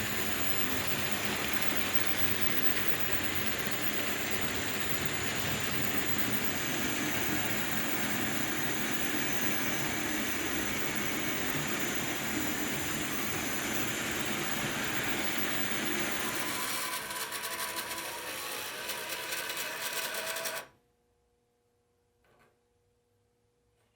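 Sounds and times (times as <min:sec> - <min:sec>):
model train motor whirring: 0:00.0 - 0:20.7.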